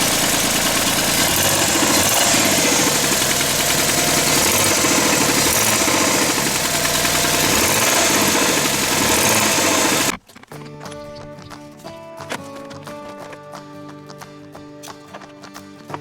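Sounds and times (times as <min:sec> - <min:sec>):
engine running with clattering: 0:00.0 - 0:10.2.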